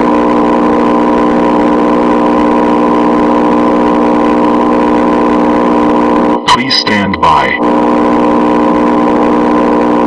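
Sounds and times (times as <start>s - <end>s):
emergency alert synthesized drone: 3.5s - 10.0s.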